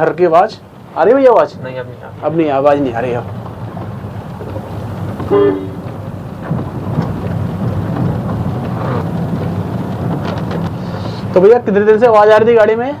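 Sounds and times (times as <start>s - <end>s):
car interior driving rumble: 0.6s - 12.7s
short horn-like tone: 5.2s - 5.9s.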